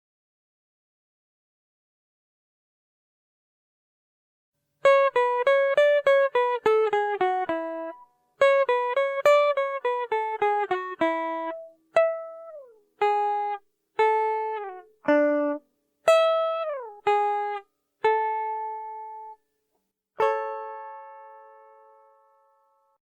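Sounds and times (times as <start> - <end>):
plucked guitar notes: 4.8 - 19.4, 20.2 - 23.0.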